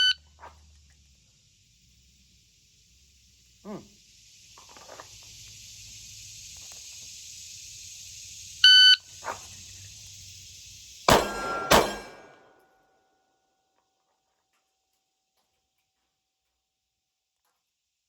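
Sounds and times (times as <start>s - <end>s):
steady hiss: 0.0s - 12.4s
pistol shots: 11.1s - 12.4s.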